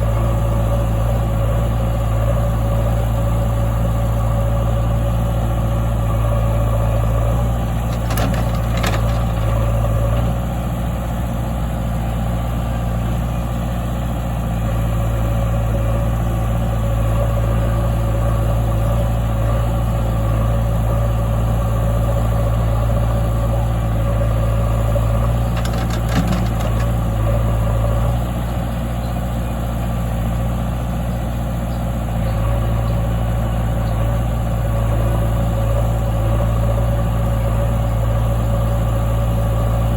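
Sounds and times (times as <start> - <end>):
diesel machinery engine running: 0.0 - 39.9
machinery clatter: 7.8 - 10.3, 25.2 - 27.3.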